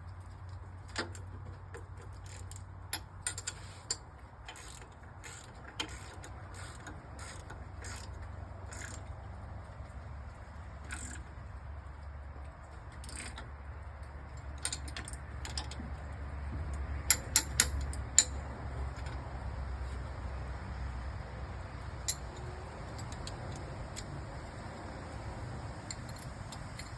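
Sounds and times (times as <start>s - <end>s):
metallic clicks of hand tools: 16.7s - 19.2s, 22.0s - 24.2s, 25.8s - 26.9s.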